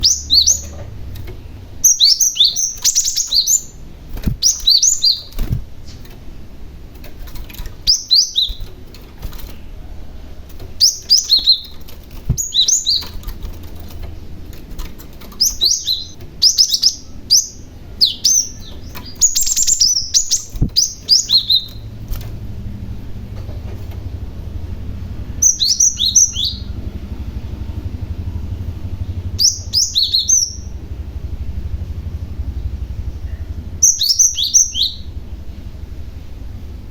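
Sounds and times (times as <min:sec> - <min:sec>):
bird singing high sharp notes: 0:00.0 - 0:00.9, 0:01.7 - 0:03.8, 0:04.4 - 0:06.0, 0:07.8 - 0:08.7, 0:10.8 - 0:11.8, 0:12.4 - 0:13.3, 0:15.4 - 0:21.9, 0:25.4 - 0:26.8, 0:29.2 - 0:30.8, 0:33.2 - 0:35.2
low steady hum: 0:00.0 - 0:36.9.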